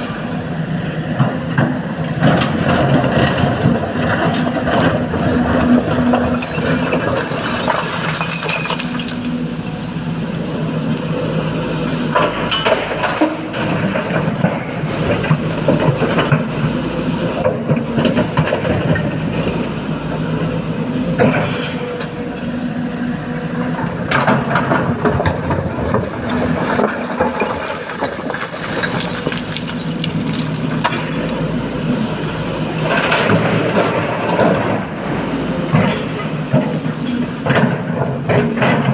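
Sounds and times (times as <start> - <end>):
excavator diesel engine running: 0.0 - 38.9
rocks clinking into truck bed: 5.9 - 9.8, 24.8 - 31.8.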